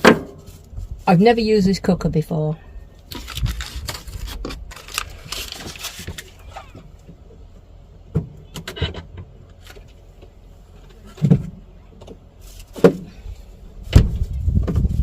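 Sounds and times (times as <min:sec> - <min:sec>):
wind buffeting microphone: 0:13.3 - 0:15.0.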